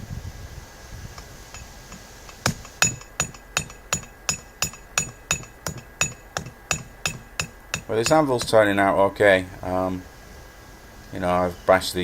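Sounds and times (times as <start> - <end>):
hammer striking steel anvil: 1.5 - 8.7.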